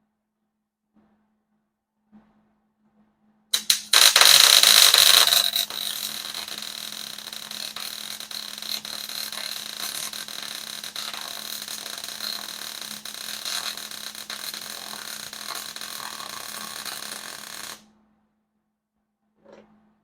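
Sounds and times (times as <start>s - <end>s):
arc striking clicks: 3.6s - 17.8s
thin high whine: 3.6s - 17.8s
welding arc crackling: 3.6s - 17.8s.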